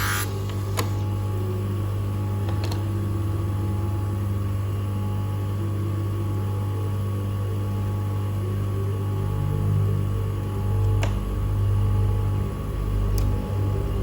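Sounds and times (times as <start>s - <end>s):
lens edging machine motor humming: 0.0s - 1.2s.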